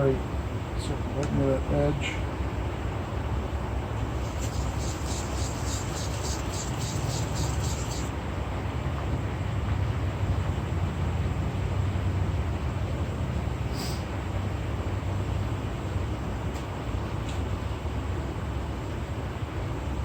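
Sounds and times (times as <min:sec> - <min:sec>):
blade rubbing on sharpening stone: 0:04.2 - 0:08.1.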